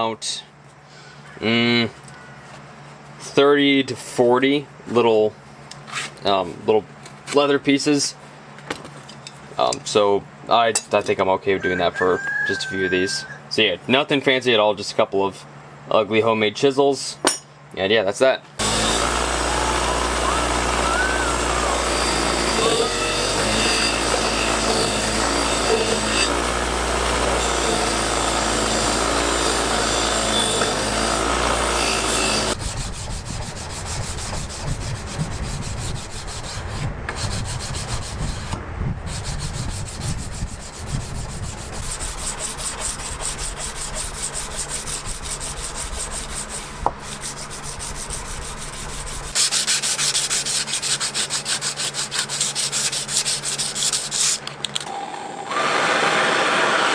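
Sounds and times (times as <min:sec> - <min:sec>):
power sander rasping: 0:18.6 - 0:56.9.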